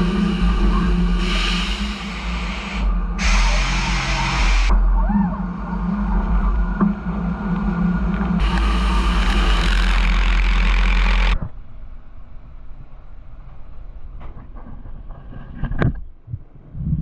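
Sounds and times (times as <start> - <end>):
hiss: 0.0 - 4.8, 8.4 - 11.4
machine tool humming: 0.0 - 11.4.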